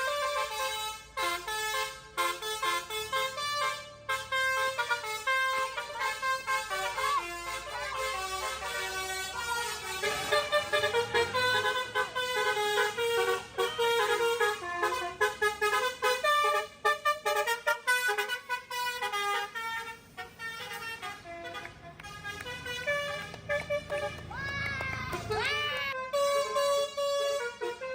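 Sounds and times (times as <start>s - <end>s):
bus horn playing a tune: 0.0s - 27.9s.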